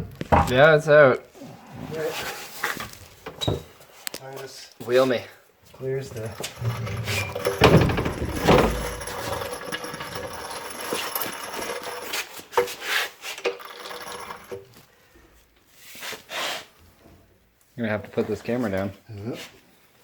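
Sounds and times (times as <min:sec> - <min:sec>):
metallic clattering and rattling: 0:05.8 - 0:14.8
metal knocks: 0:06.0 - 0:12.7.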